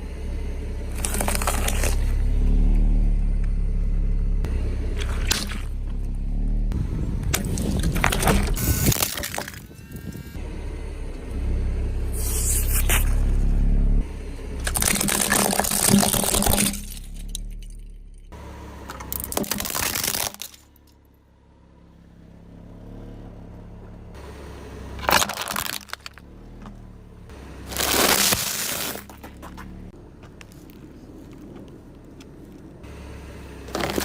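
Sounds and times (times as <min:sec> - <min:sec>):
low engine rumble: 0:00.0 - 0:34.0
car crushing objects: 0:00.9 - 0:02.3, 0:07.3 - 0:10.1, 0:14.5 - 0:20.9, 0:25.0 - 0:26.9, 0:27.6 - 0:32.8, 0:33.7 - 0:34.0.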